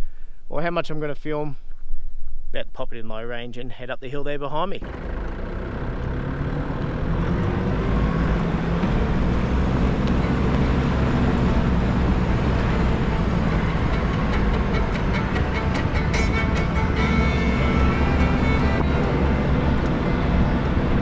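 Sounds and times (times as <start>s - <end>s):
engine rumbling under load: 4.8s - 21.0s
road noise: 4.8s - 21.0s.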